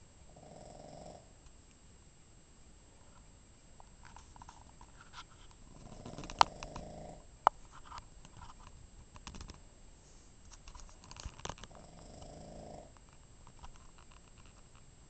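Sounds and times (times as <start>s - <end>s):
dog snoring: 0.3s - 1.4s, 5.7s - 7.3s, 11.6s - 13.0s
soft breathing: 9.9s - 10.6s.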